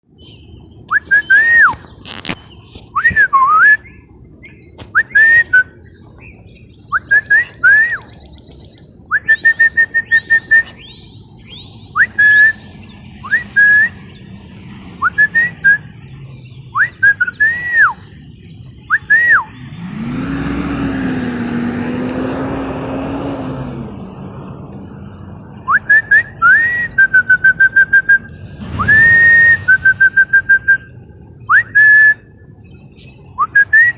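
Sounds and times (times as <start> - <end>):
songbird singing whistled notes: 0.2 - 19.8, 24.7 - 33.9
loud noisy sound with low hum: 28.2 - 32.1.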